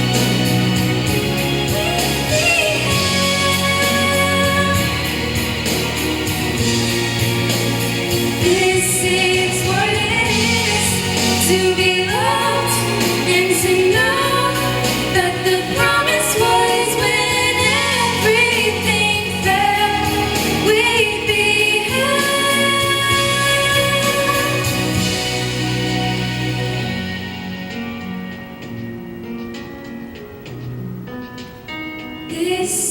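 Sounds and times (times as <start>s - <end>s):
instrumental accompaniment: 0.0s - 32.9s
people singing a slow ballad: 8.4s - 25.5s.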